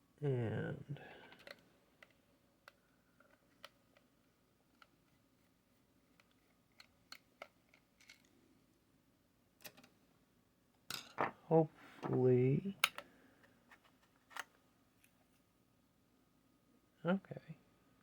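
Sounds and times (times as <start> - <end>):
small parts clicking on workbench: 9.6 - 9.9.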